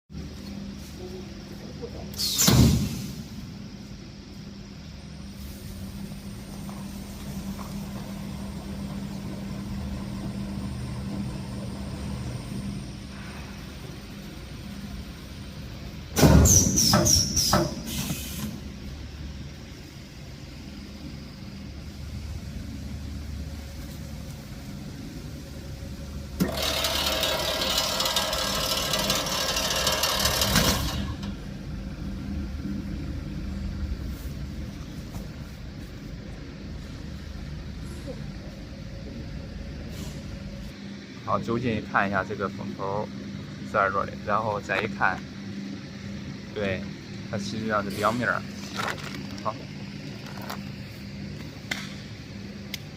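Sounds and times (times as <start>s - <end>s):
packing machine motor hum: 5.8s - 13.2s, 14.0s - 41.0s, 44.8s - 52.9s
loud rushing hiss: 15.7s - 20.6s
mechanical clacks and squeaks: 16.4s - 17.9s.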